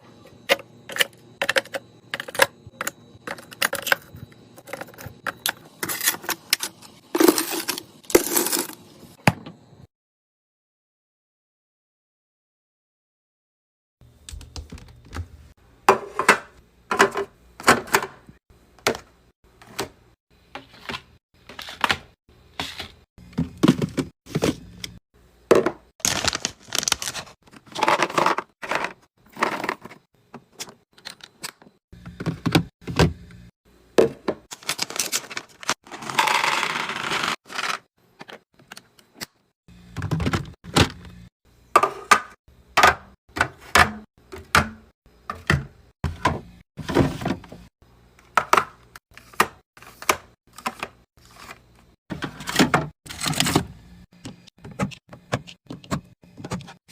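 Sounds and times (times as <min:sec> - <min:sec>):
containers clicking and clattering: 0:00.3 - 0:08.8, 0:22.6 - 0:30.0.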